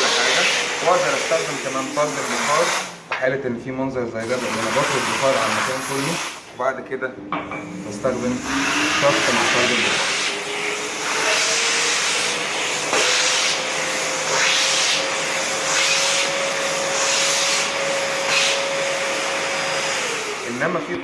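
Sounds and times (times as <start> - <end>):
vacuum motor whine: 7.5 - 21.0.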